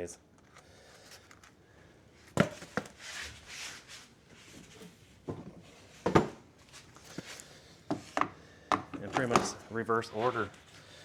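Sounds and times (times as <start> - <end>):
soft rubbing and scraping: 3.0 - 5.0, 9.6 - 11.0.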